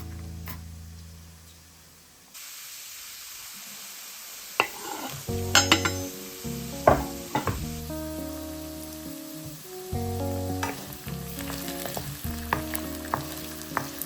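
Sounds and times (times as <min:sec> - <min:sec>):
food sizzling in a frying pan: 0:01.7 - 0:14.0
utensil knocking against pan: 0:05.6 - 0:06.0, 0:06.9 - 0:07.7, 0:11.9 - 0:14.0.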